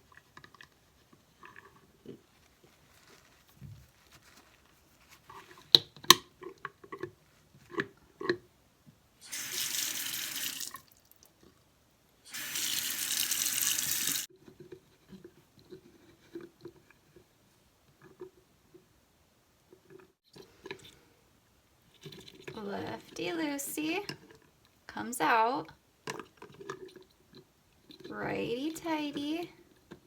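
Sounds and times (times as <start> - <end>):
water running into sink: 9.2 - 11.2, 12.3 - 14.3.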